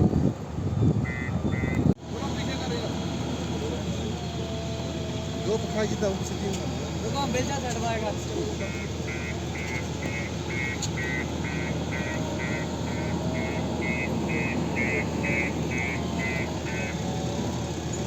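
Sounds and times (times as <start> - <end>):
heavy vehicle engine running: 0.0 - 18.0
reversing alarm beeping: 8.5 - 17.5.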